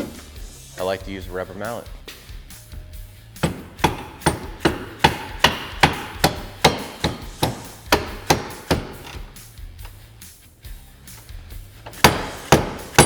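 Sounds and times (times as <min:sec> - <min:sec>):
rubber mallet tapping a bolt: 0:03.4 - 0:09.3.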